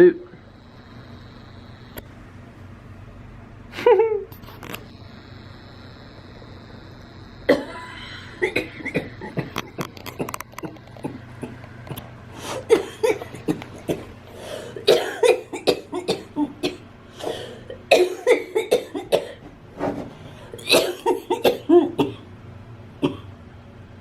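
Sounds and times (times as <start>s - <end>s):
person coughing harshly: 7.5s - 9.6s, 12.5s - 19.4s, 20.6s - 22.3s, 23.0s - 23.3s.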